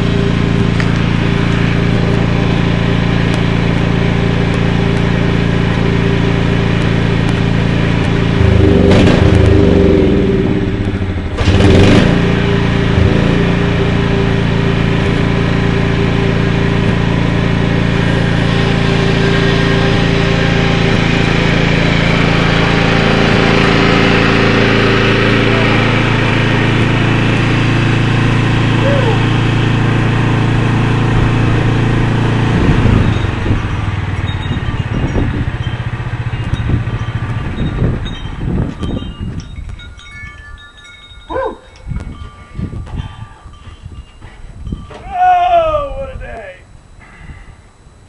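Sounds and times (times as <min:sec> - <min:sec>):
lawn mower engine running: 0:00.0 - 0:45.0.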